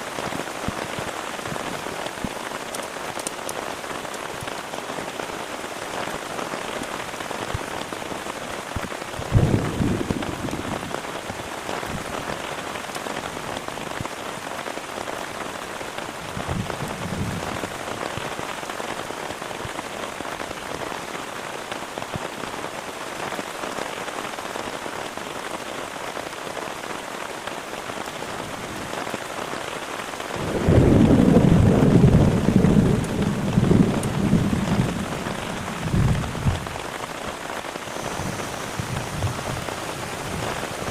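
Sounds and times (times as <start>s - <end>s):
heavy rain falling: 0.0s - 40.9s
thunder rumbling: 9.2s - 11.0s, 30.3s - 40.9s.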